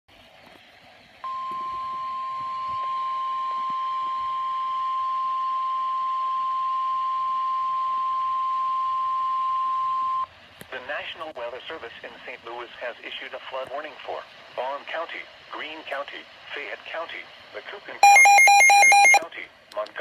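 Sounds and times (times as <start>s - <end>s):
faint radio hiss: 0.1s - 20.0s
steady alarm beep: 18.0s - 19.2s.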